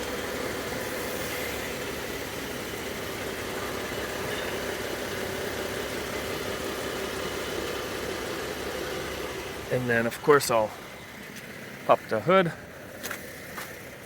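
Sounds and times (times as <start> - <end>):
vehicle engine idling: 0.0 - 14.0.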